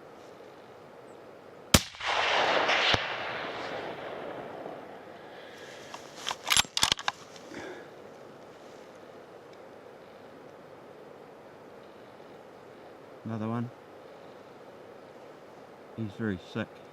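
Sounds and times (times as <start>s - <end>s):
rifle shot: 1.7s - 5.5s
rolling echo: 1.8s - 5.9s
rifle bolt clicking: 6.3s - 7.2s.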